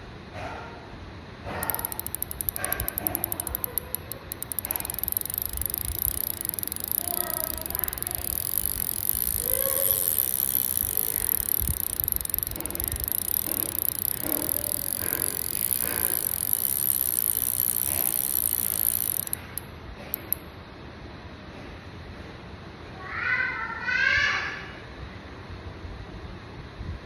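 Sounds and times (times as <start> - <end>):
fishing reel ratcheting click: 1.5 - 20.4.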